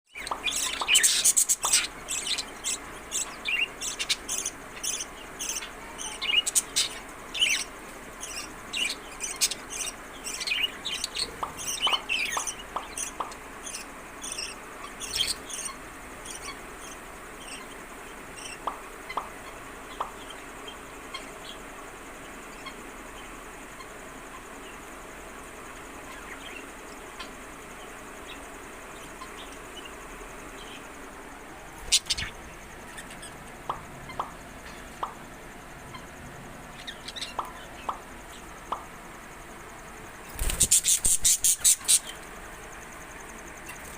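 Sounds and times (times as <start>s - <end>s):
budgerigars chirping: 0.1s - 21.6s, 31.8s - 35.2s, 35.8s - 38.9s, 40.4s - 42.2s.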